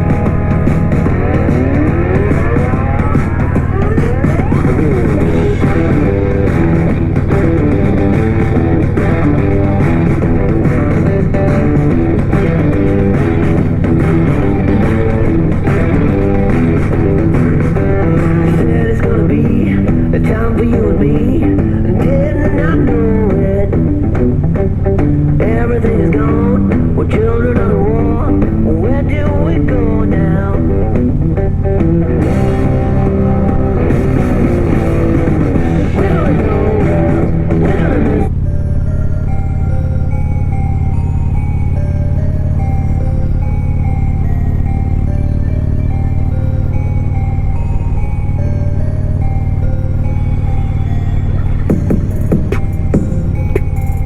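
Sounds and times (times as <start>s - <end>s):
rock music through speakers: 0.0s - 38.4s, 49.2s - 54.0s
steady low hum: 0.0s - 54.0s
steady low rumble: 0.0s - 54.0s.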